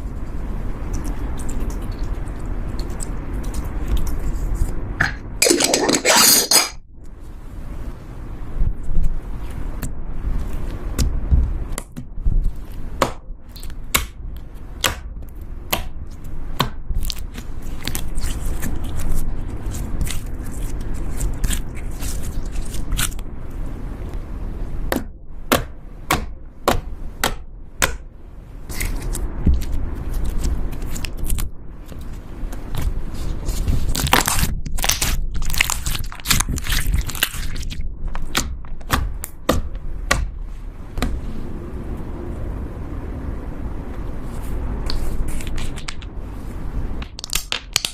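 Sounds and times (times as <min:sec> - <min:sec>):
slime crackling and popping: 0:33.9 - 0:39.0, 0:47.0 - 0:47.9.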